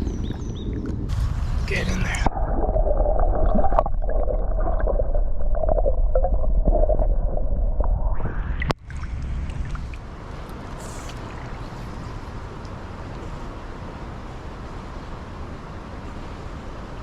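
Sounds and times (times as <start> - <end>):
underwater gurgling and rumbling: 0.0 - 13.2
outdoor hiss: 10.1 - 17.0.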